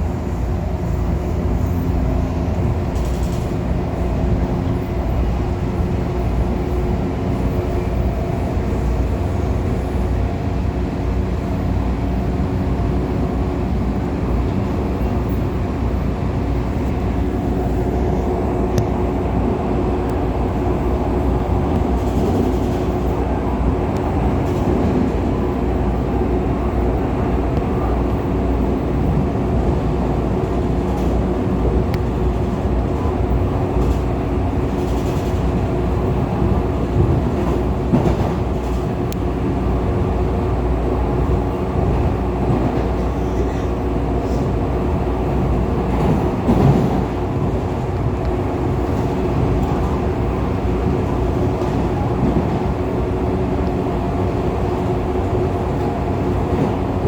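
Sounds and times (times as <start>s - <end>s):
train wheels rumbling on rail: 0.0s - 57.0s.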